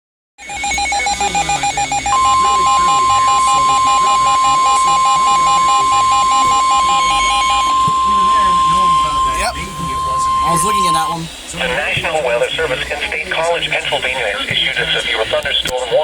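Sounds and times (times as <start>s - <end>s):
rapidly pulsing beep: 0.4s - 11.4s
steady alarm tone: 0.4s - 11.7s.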